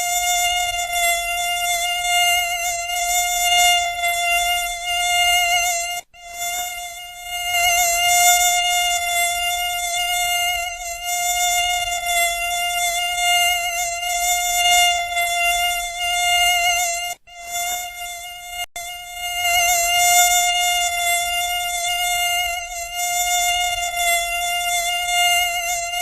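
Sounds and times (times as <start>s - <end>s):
mosquito buzzing: 0.0s - 26.0s.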